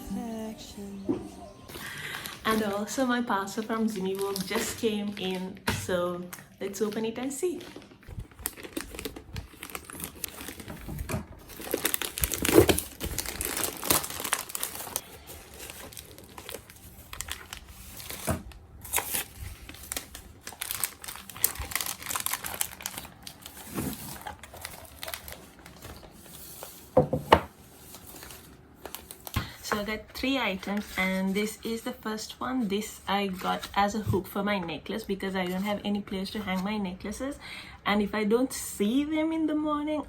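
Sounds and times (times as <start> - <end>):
packaging crinkling and tearing: 1.8 - 5.6, 6.3 - 27.0, 27.7 - 29.6.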